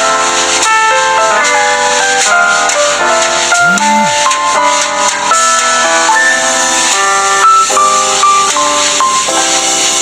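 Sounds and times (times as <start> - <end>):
instrumental music chords: 3.6 - 4.3.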